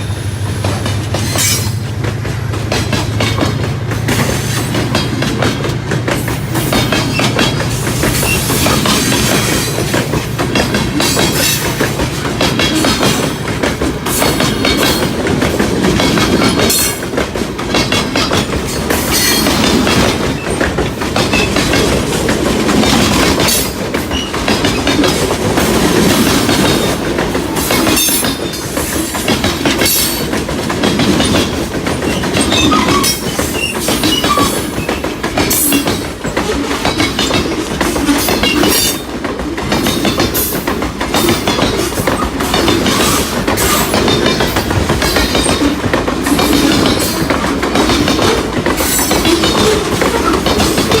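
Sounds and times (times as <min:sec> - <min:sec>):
railway cars rumbling past: 0:00.0 - 0:51.0
wheels clattering over rail joints: 0:00.0 - 0:51.0.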